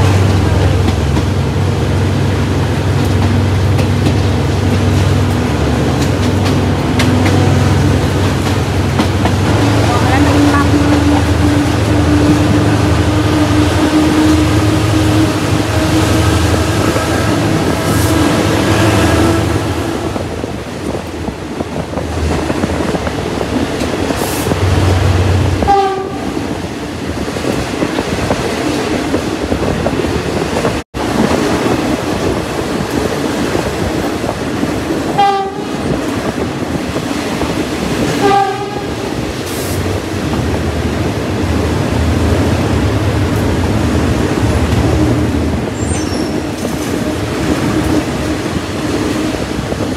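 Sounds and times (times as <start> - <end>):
train running on rails: 0.0 - 49.9
train horn blasts: 9.5 - 20.3, 25.6 - 26.4, 35.1 - 35.8, 38.1 - 39.2.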